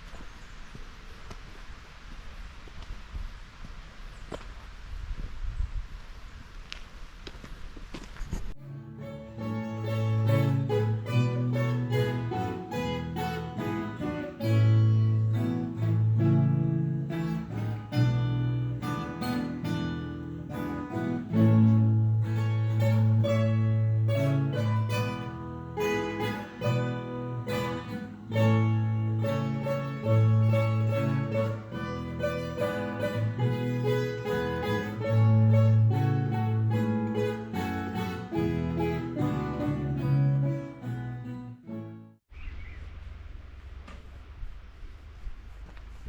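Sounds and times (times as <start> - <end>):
steady bass line: 8.6 - 41.4
plucked acoustic guitar: 8.6 - 42.2.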